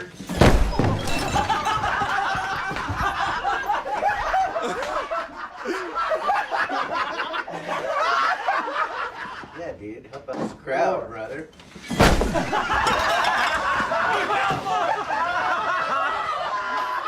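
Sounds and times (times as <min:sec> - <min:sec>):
people snickering and chuckling: 0:01.0 - 0:09.6, 0:12.2 - 0:17.0.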